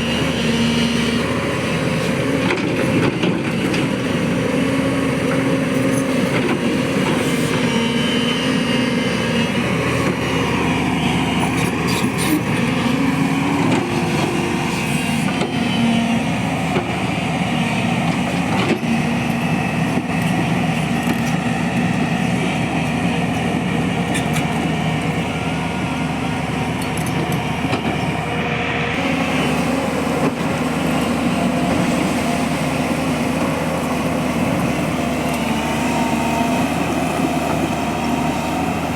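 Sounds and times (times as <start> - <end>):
excavator diesel engine running: 0.0 - 38.9.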